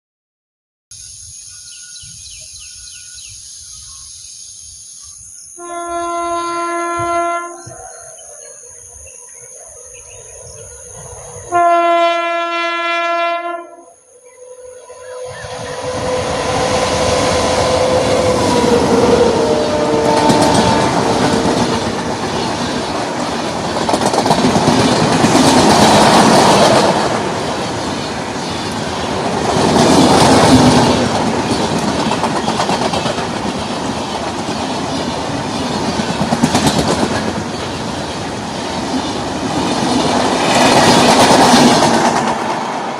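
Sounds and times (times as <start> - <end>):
locomotive horn: 5.6 - 7.8, 11.5 - 14.0, 14.6 - 21.2
train wheels clattering over rail joints: 17.0 - 42.7.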